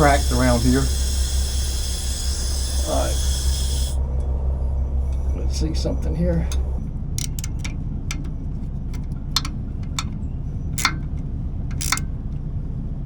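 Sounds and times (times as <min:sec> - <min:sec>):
low hum: 0:00.0 - 0:13.0
wrench and fasteners clicking: 0:07.2 - 0:08.3, 0:08.9 - 0:10.2, 0:10.8 - 0:12.1.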